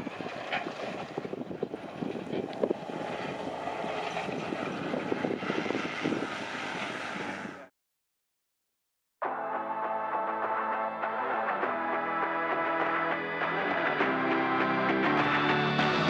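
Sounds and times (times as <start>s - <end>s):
motor vehicle running: 0.0s - 7.7s, 11.7s - 16.0s.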